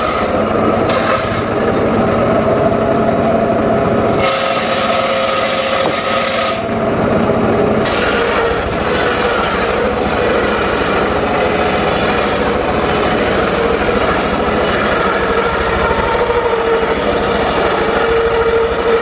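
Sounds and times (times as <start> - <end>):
saw engine running: 7.8 - 19.0
saw cutting wood: 7.9 - 19.0.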